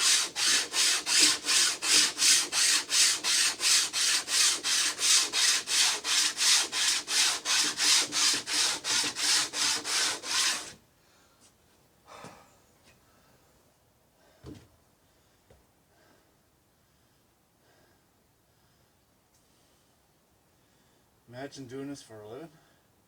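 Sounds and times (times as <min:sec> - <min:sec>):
hand sanding wood: 0:00.0 - 0:10.8.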